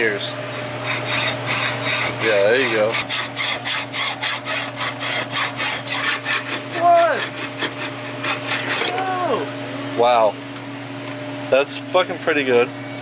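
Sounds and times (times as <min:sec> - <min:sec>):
hacksaw cutting through pipe: 0:00.6 - 0:09.1.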